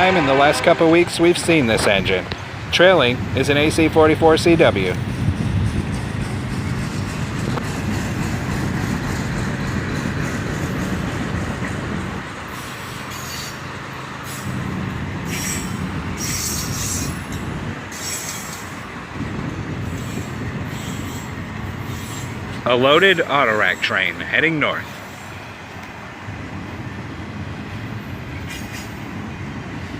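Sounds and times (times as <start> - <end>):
locomotive engine drone: 0.0 - 29.9
train wheel rumble: 0.0 - 29.9
high-pitched wheel squeal: 12.5 - 14.6, 15.2 - 18.8, 19.8 - 22.4.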